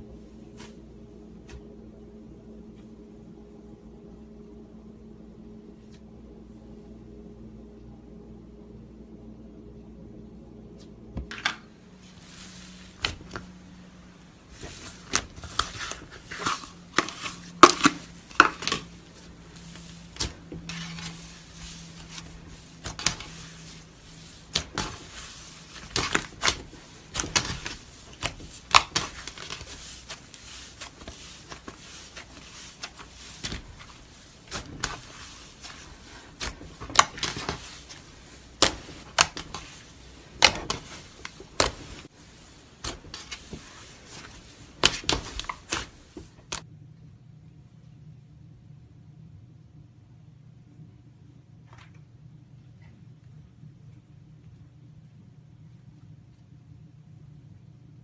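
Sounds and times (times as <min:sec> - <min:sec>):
slime crackling and popping: 0:24.1 - 0:37.8, 0:38.6 - 0:39.7.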